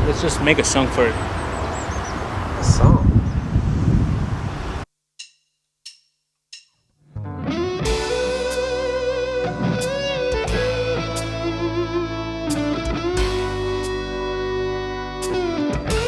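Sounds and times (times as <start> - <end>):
outdoor background noise: 0.0 - 4.9
lead electric guitar melody: 7.2 - 16.0
rock band playing: 7.3 - 16.0.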